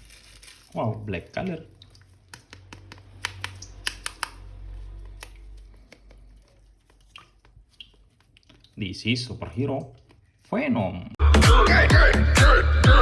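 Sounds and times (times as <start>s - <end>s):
plastic clicks and taps: 2.3s - 4.4s.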